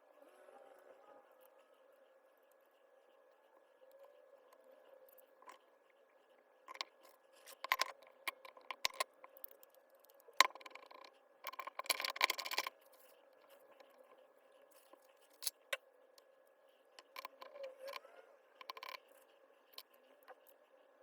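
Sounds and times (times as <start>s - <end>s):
clicking and scraping: 6.7s - 15.8s, 17.0s - 20.6s.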